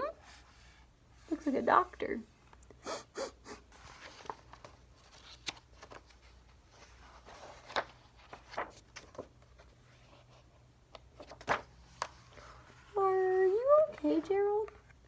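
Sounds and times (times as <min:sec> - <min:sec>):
paper rustling: 0:03.8 - 0:15.0.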